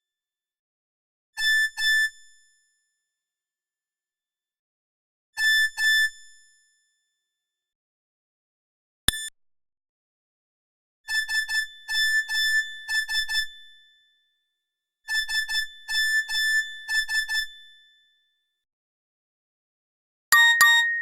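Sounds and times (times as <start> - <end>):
synthesized ringtone melody: 20.3 - 21.0.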